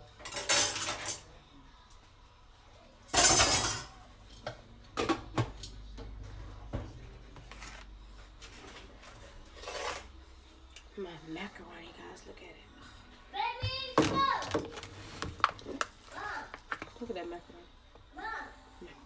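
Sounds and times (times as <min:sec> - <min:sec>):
spoon scraping a pot: 0:09.4 - 0:10.2.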